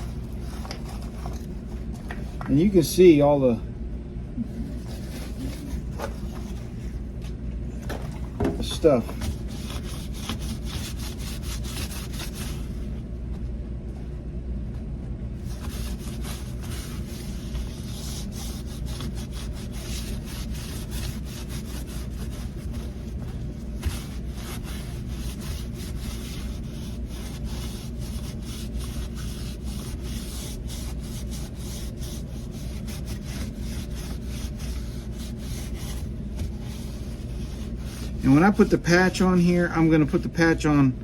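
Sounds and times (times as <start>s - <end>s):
steady low hum: 0.0s - 41.0s
rubbing rubber gasket: 8.6s - 12.9s, 15.4s - 39.3s.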